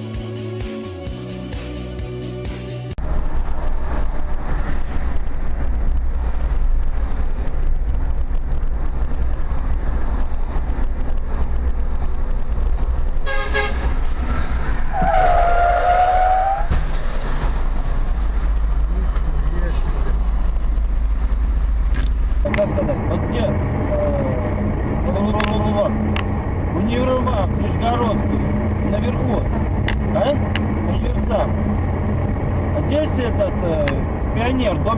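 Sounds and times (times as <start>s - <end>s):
car road and engine rumble: 2.9s - 34.9s
car horn honks: 13.2s - 13.9s.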